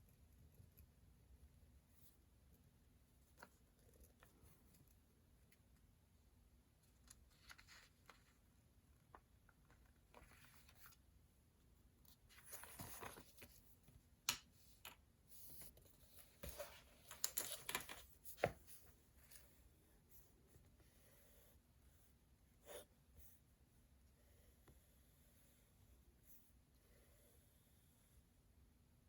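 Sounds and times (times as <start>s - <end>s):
paper rustling: 6.9s - 11.0s, 12.1s - 13.8s.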